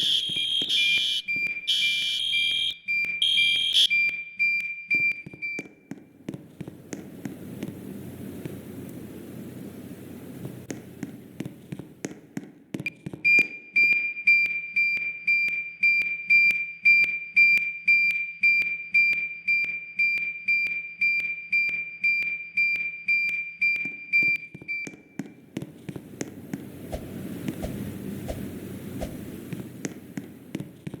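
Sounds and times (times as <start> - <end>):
fire alarm chime strokes: 0.0 - 5.6.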